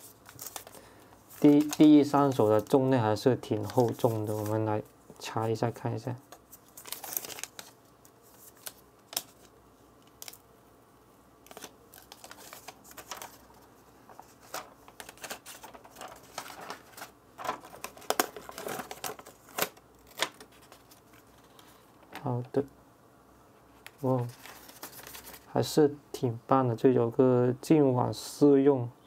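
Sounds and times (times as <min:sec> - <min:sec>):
plastic film crinkling: 0:00.0 - 0:04.7, 0:06.3 - 0:10.4, 0:11.4 - 0:22.5, 0:23.8 - 0:25.6.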